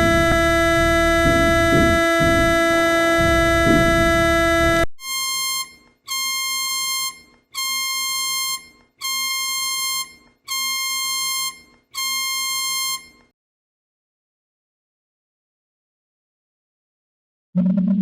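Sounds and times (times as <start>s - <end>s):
high buzzy alarm beep: 0.0s - 13.2s.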